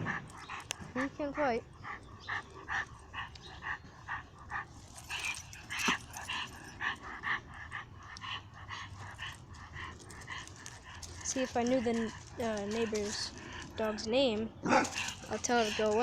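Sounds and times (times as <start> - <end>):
dogs barking: 14.6 - 16.0.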